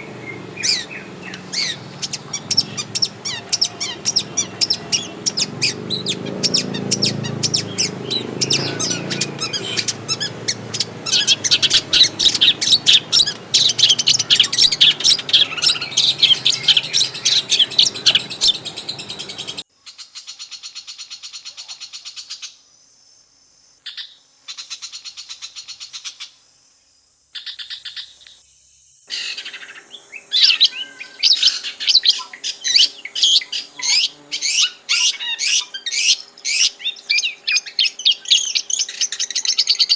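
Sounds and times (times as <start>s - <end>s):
low background rumble: 0.0s - 19.6s
bird chirping and trilling: 0.0s - 22.5s, 29.1s - 39.9s.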